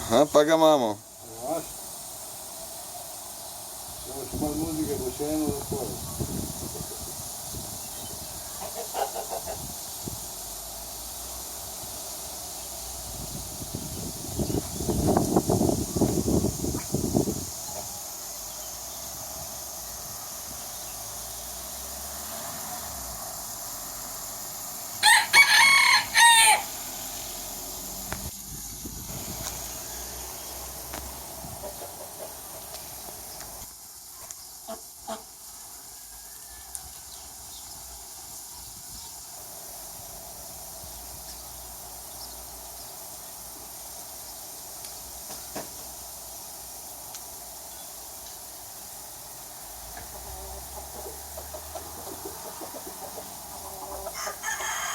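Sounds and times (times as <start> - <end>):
steady hiss: 0.0 - 54.9
rooster crowing: 25.0 - 27.1, 35.7 - 37.3, 50.2 - 54.9.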